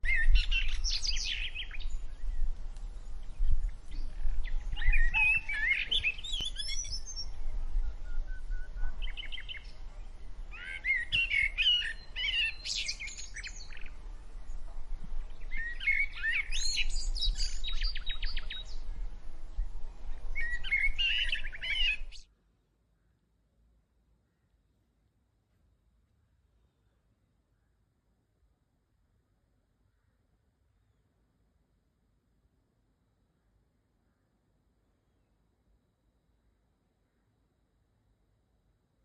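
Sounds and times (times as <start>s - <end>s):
songbirds singing: 0.0s - 22.3s.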